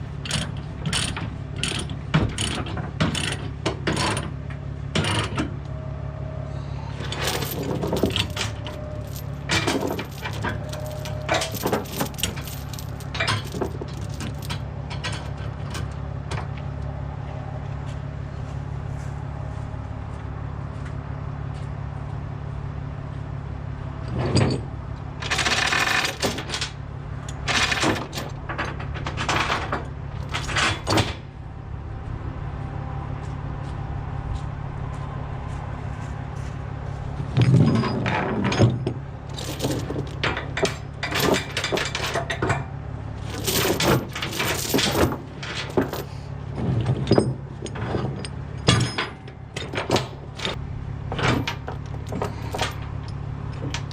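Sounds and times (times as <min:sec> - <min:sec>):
chains clanking and rattling: 0:00.0 - 0:05.5, 0:07.0 - 0:16.5, 0:24.0 - 0:31.3, 0:37.2 - 0:53.9.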